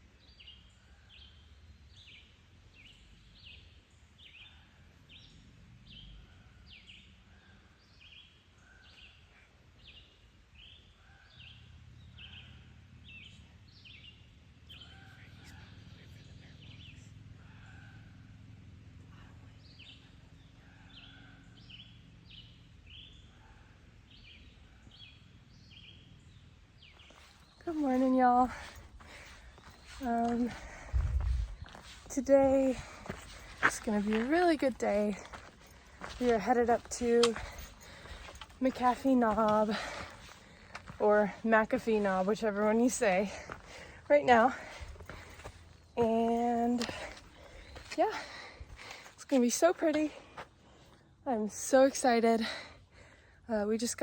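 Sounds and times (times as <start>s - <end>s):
faint birdsong chirps: 0.0s - 54.0s.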